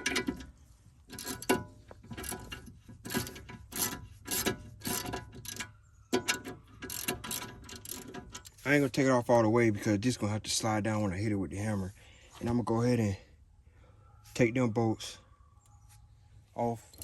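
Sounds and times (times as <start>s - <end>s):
ratchet wrench clicking: 6.2s - 8.5s.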